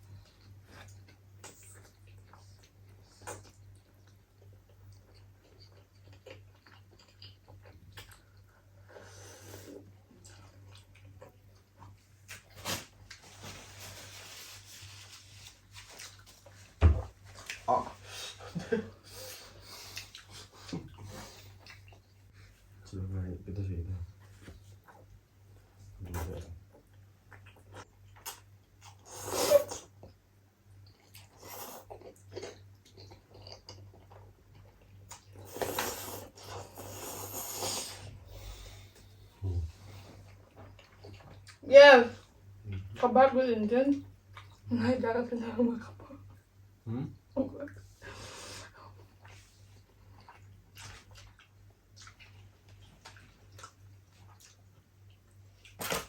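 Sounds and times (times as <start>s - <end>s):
chewing and mouth smacks: 0.1s - 8.7s, 10.0s - 13.2s, 19.8s - 22.4s, 26.1s - 29.0s, 30.8s - 36.8s, 40.2s - 41.6s, 44.0s - 44.7s, 49.1s - 56.0s.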